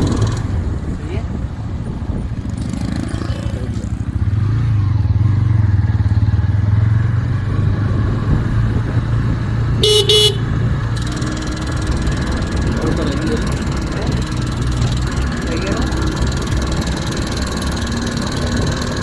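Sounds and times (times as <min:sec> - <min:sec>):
motorcycle engine running: 0:00.0 - 0:19.0
horn beeps: 0:09.8 - 0:10.5.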